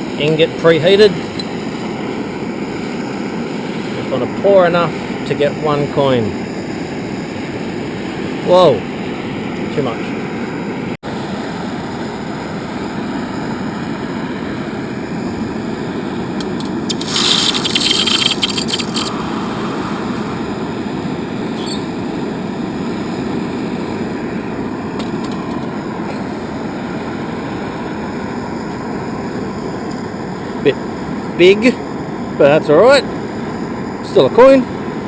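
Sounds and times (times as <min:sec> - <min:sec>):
loud hiss: 0:16.8 - 0:20.6.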